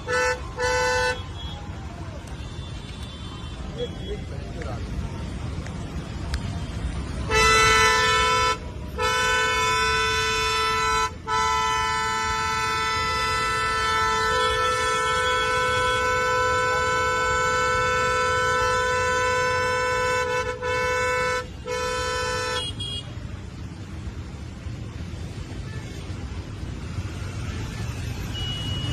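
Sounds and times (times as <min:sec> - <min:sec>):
car horn blaring: 0:00.0 - 0:01.6, 0:07.2 - 0:23.2
low traffic rumble: 0:00.0 - 0:28.9.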